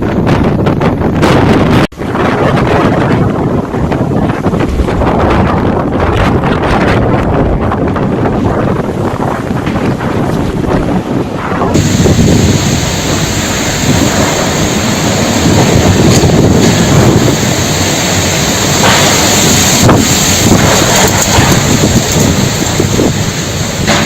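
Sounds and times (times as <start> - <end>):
wind blowing on microphone: 0.0 - 24.0
short crackles: 11.8 - 24.0.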